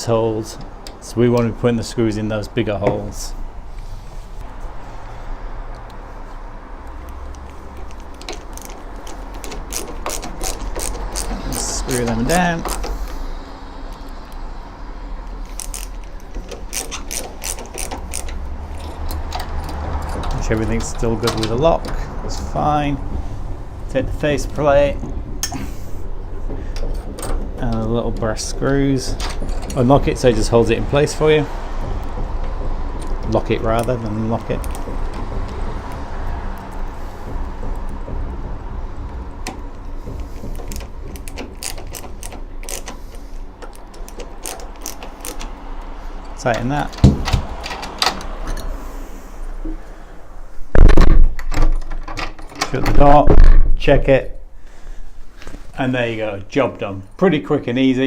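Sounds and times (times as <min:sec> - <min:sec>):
screwdriver ratchet clicking: 0:06.8 - 0:13.2, 0:15.2 - 0:20.7, 0:32.0 - 0:36.9, 0:40.1 - 0:48.7.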